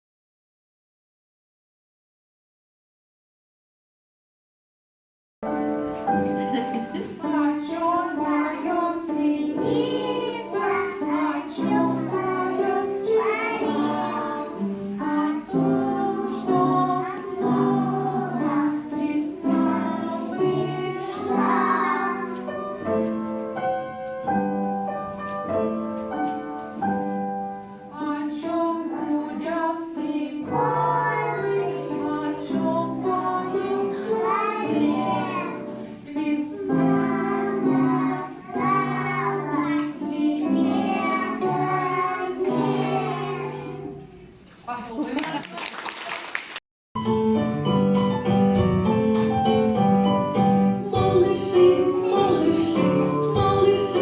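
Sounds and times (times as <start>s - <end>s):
children singing: 7.0s - 22.9s, 27.9s - 44.2s, 50.8s - 54.0s
instrumental accompaniment: 47.0s - 54.0s.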